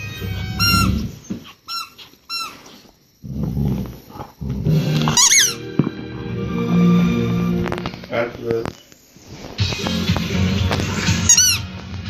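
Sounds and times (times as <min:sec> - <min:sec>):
squeaky toy squeaking: 0:00.0 - 0:01.0, 0:01.7 - 0:02.6, 0:05.1 - 0:05.7, 0:11.1 - 0:11.7.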